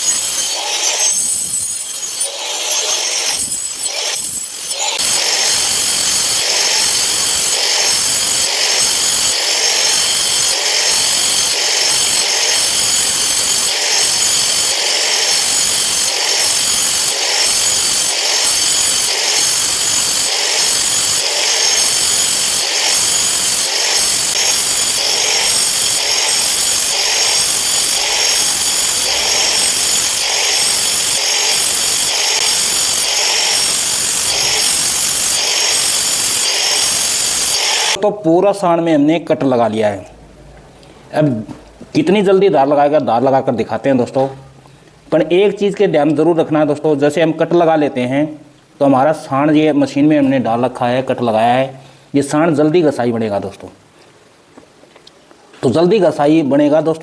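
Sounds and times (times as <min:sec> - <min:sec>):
angle grinder cutting stone: 0:00.0 - 0:38.0.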